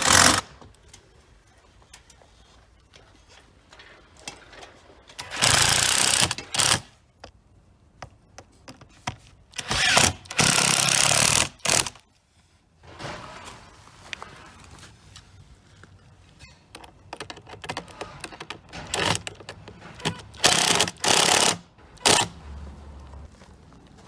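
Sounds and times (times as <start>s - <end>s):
power drill running in bursts: 9.6s - 11.9s, 20.3s - 22.3s.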